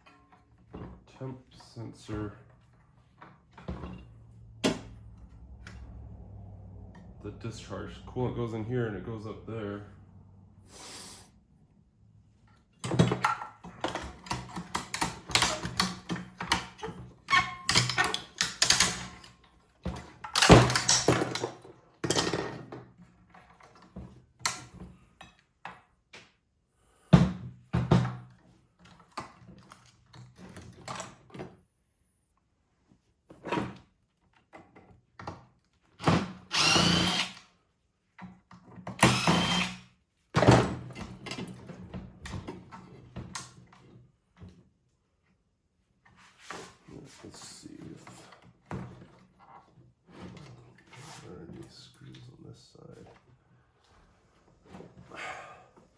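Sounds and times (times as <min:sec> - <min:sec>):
power drill-driver bursts: 0:36.5 - 0:37.4, 0:39.0 - 0:39.8.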